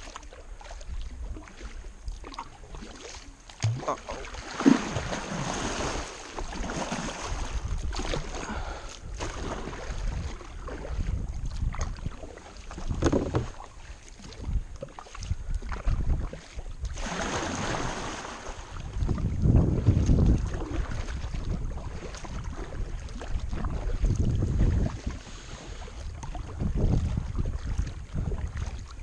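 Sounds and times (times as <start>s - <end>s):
paddle strokes splashing water: 0.0s - 29.0s
wind buffeting microphone: 7.1s - 29.0s.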